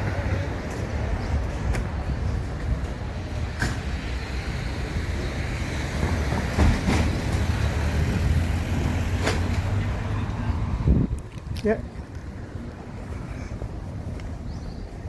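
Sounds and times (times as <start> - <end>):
vehicle low rumble: 0.0 - 15.0.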